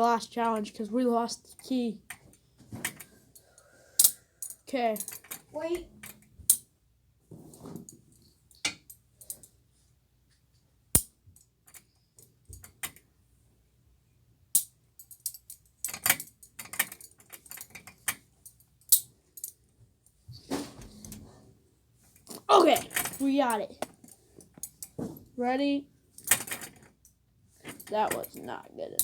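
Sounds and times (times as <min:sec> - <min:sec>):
handcuffs and chain clinking: 0:02.9 - 0:06.6, 0:08.2 - 0:09.6, 0:14.6 - 0:19.6, 0:22.1 - 0:25.0, 0:26.2 - 0:29.0.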